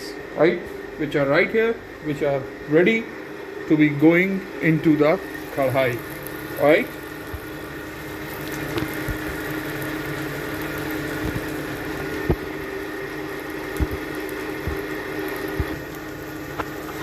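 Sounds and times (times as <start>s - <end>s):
mechanical hum: 0.0s - 17.0s
masala sizzling with pops: 5.0s - 17.0s.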